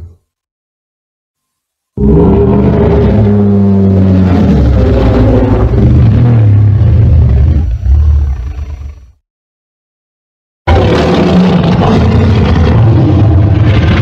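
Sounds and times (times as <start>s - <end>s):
monster roar: 2.0s - 8.9s, 10.7s - 14.0s.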